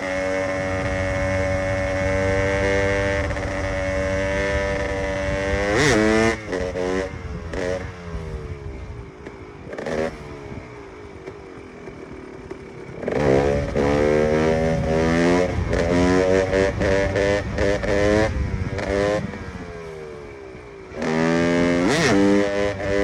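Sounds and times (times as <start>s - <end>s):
two-stroke motorcycle engine revving: 0.0s - 23.0s.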